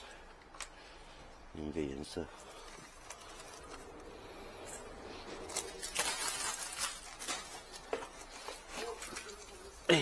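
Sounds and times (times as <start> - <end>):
plastic parts rustling: 2.4 - 9.9.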